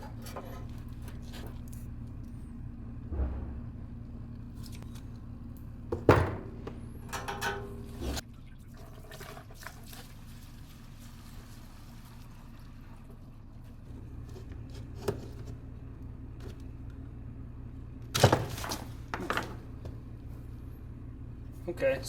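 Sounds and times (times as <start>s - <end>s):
gasoline splashing and pouring: 7.2s - 13.6s.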